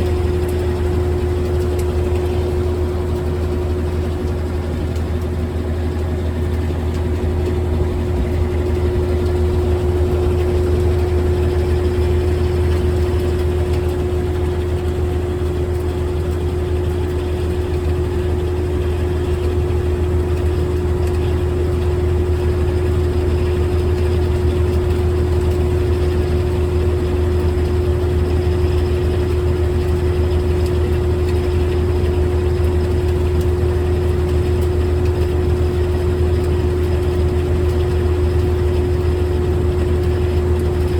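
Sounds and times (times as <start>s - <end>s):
constant tone: 0.0s - 40.9s
washing machine humming: 0.0s - 40.9s.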